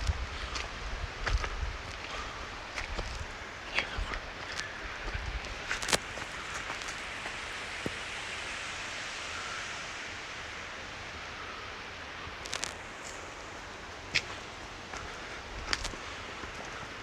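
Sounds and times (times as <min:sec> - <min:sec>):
waterfall rushing: 0:02.0 - 0:17.0.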